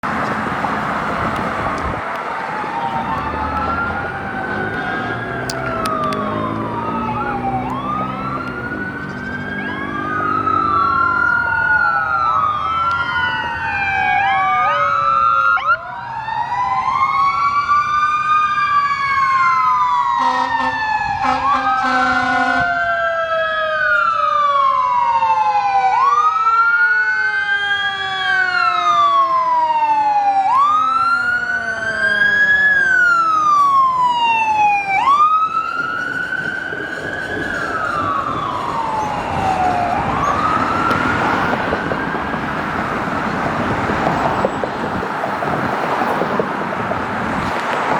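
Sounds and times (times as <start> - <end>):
electronic siren wailing: 1.6 - 45.0
truck air horn blast: 20.2 - 22.7.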